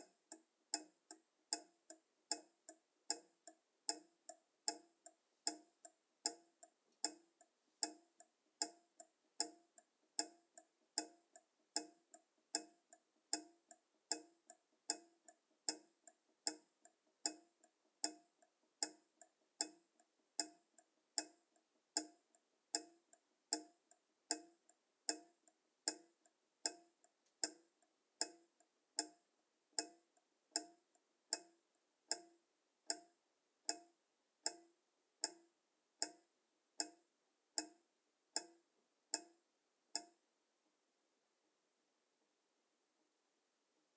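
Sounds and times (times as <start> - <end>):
pendulum clock ticking: 0.0 - 40.2.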